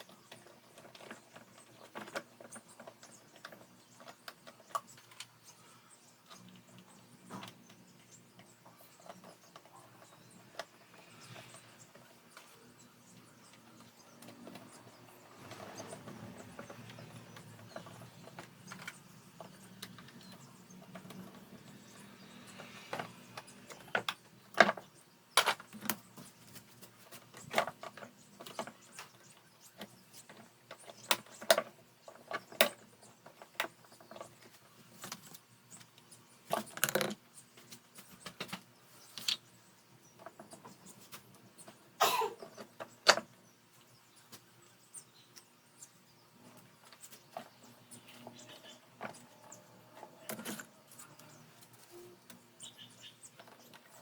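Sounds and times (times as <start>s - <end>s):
plastic clicks and knocks: 36.5s - 37.2s.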